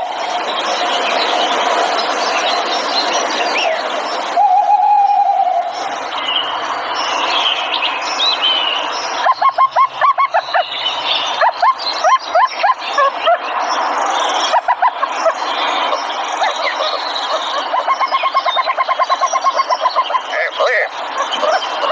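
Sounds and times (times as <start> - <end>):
songbirds whistling and chirping: 0.0 - 21.9.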